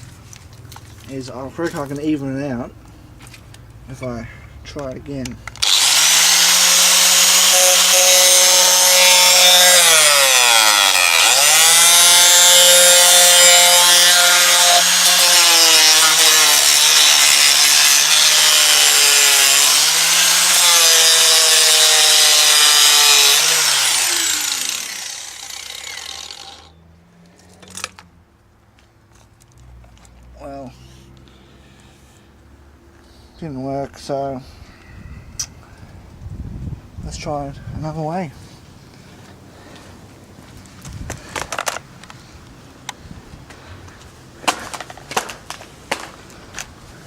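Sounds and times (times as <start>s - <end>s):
power tool grinding casing: 5.6s - 26.7s.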